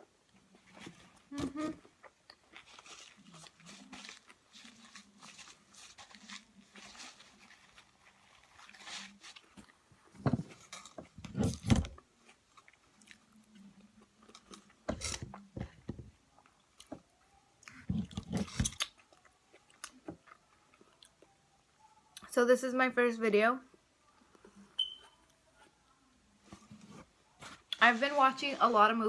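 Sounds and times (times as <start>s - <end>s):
crackling and clicking while eating: 0.1s - 22.3s
person chewing food: 1.8s - 11.2s, 12.0s - 15.5s, 17.6s - 21.4s.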